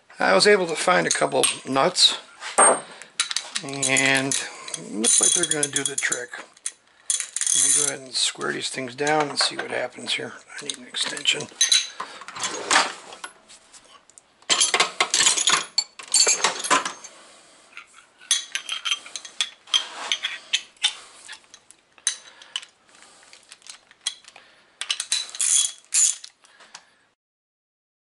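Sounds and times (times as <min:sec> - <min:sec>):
metal hand tools clinking: 0:01.0 - 0:01.9, 0:02.6 - 0:13.4, 0:14.5 - 0:17.2, 0:17.8 - 0:26.4.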